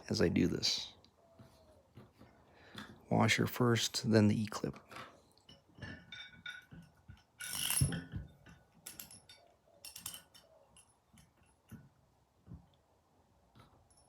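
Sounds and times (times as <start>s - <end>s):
small steel parts clinking: 5.5s - 11.7s
metal clatter: 5.8s - 10.4s.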